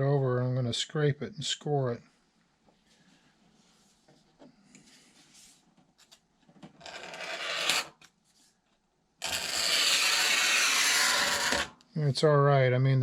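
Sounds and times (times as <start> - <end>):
blade scraping plastic sheet: 9.2 - 11.8.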